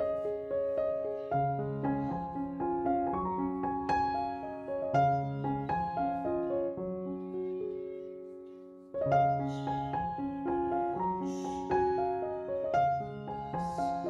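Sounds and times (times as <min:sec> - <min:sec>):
gentle piano music: 0:00.0 - 0:14.0.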